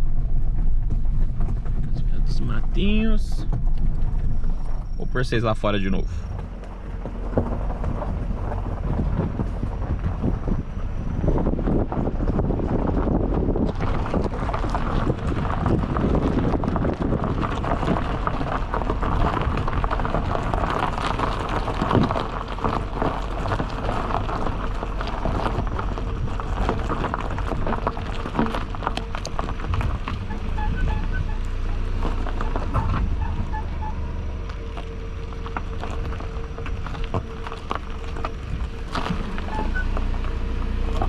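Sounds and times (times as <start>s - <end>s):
tyres crunching over gravel: 0.0s - 41.0s
wind on microphone: 6.2s - 33.9s
stones clicking: 13.7s - 30.4s, 34.5s - 40.3s.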